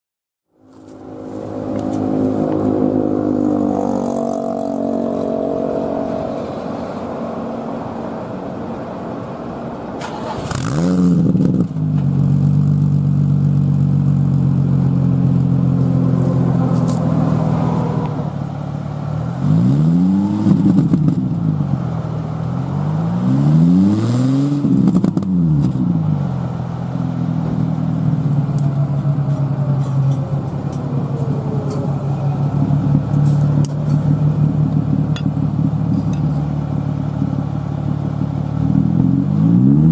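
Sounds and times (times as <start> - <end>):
engine throttle blips: 0.8 - 39.9
engine idling: 25.9 - 39.0.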